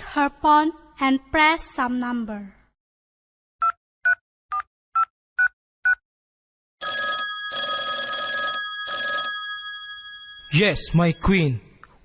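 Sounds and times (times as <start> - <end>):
telephone ringing: 6.8 - 11.6.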